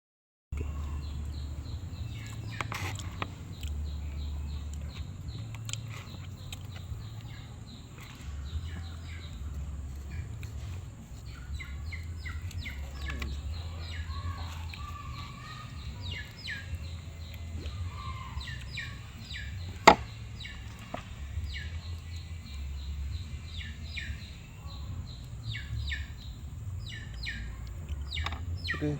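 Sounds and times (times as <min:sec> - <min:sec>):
birds chirping: 0:00.5 - 0:28.9
low steady rumble: 0:00.6 - 0:28.9
chops and knocks: 0:19.7 - 0:21.1.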